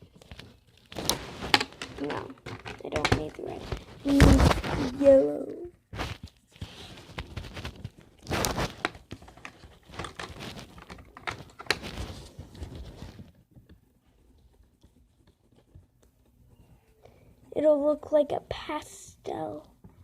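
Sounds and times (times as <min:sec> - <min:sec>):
pencils clicking and tapping: 0:00.0 - 0:05.2, 0:06.2 - 0:16.6
paper and pencils rustling: 0:00.0 - 0:18.3.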